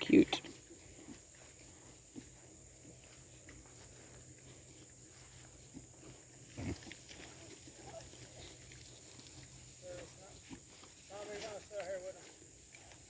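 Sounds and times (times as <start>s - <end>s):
faint pig sounds: 5.7s - 10.8s
pig grunting: 6.4s - 8.6s.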